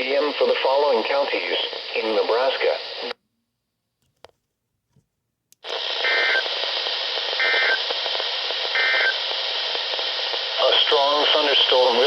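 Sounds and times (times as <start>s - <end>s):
radio hiss: 0.0s - 3.2s, 5.6s - 12.0s.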